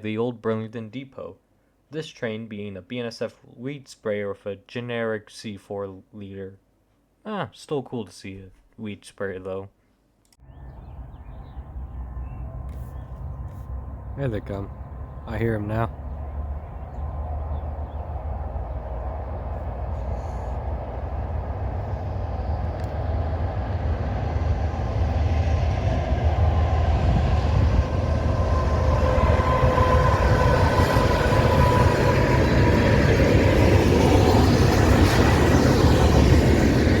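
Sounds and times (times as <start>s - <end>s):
train rumbling on rails: 10.5s - 37.0s.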